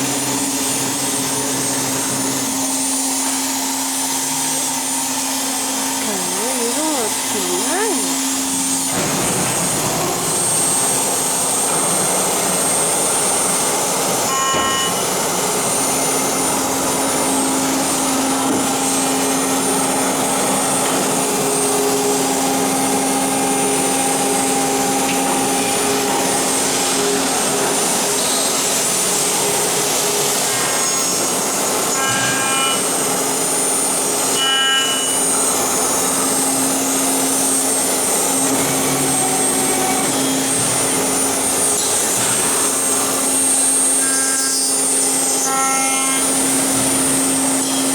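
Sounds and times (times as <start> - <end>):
electric spindle milling hum: 0.0 - 8.9
brief high ringing tones: 14.3 - 15.1.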